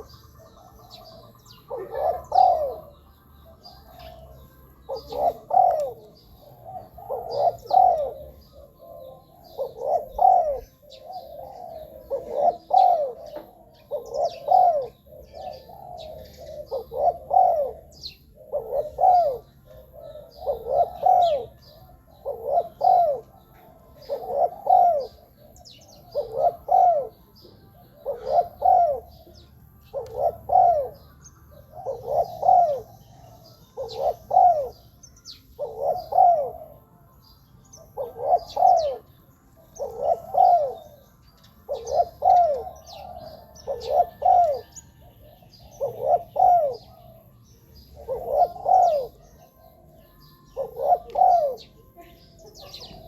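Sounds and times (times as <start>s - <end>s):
dove cooing: 0.0s - 37.0s, 37.6s - 53.0s.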